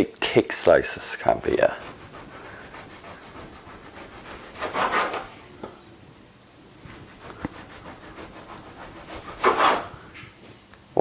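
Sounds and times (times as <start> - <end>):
bread knife sawing through loaf: 1.5 - 5.3, 7.3 - 9.9.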